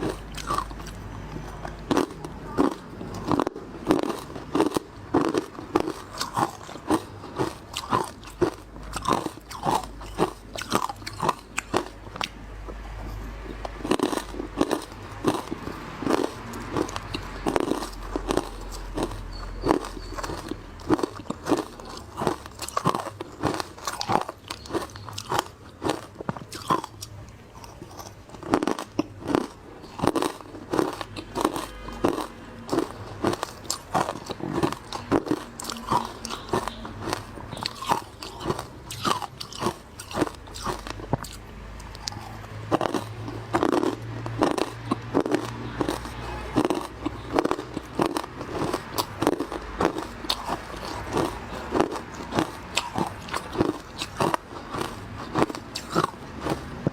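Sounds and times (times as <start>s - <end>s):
ice being chewed crunching: 0.0s - 56.9s.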